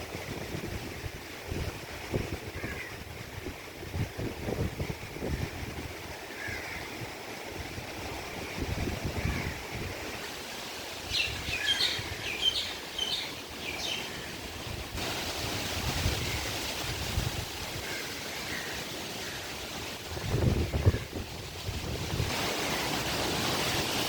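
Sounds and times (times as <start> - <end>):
wind on microphone: 0.0 - 10.3, 11.0 - 24.0
flowing floodwater: 0.0 - 24.0
heavy rain: 0.0 - 24.0
bird chirping: 11.1 - 14.2.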